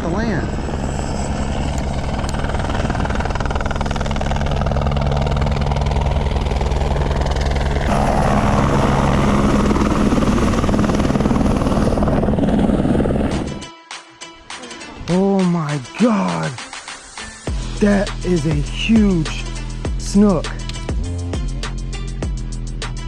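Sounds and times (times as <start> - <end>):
engine drone with chopping beat: 16.4 - 23.0.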